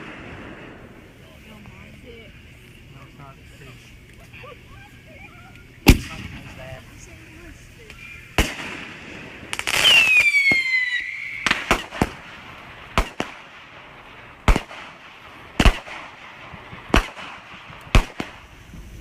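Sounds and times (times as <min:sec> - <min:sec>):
sharp firework bangs: 0:00.0 - 0:01.1, 0:05.8 - 0:06.8, 0:07.9 - 0:18.8
whistling firework: 0:00.0 - 0:01.1, 0:07.9 - 0:19.0.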